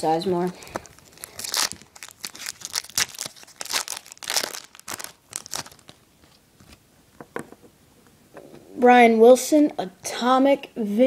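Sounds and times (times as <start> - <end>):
foil wrapper tearing and crinkling: 0.5 - 6.0.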